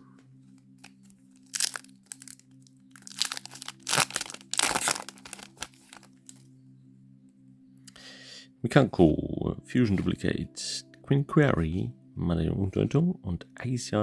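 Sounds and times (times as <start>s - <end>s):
foil wrapper crinkling and tearing: 0.8s - 6.4s.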